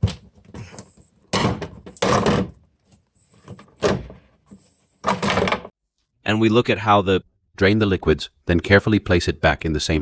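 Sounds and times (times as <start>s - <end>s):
plastic clattering and scraping: 0.0s - 5.8s.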